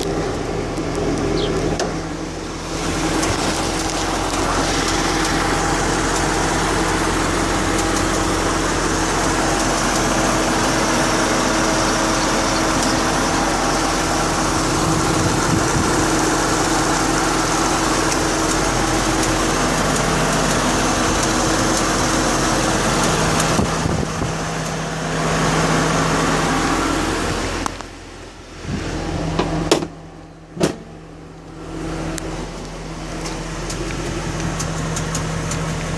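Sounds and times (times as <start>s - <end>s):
car engine running: 0.0s - 35.9s
light engine ticking: 3.2s - 24.8s.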